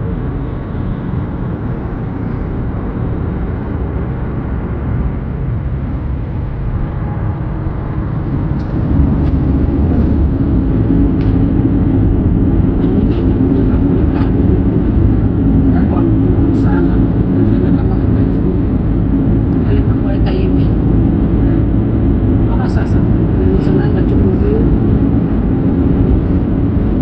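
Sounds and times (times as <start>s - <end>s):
car road and engine rumble: 0.0s - 27.0s.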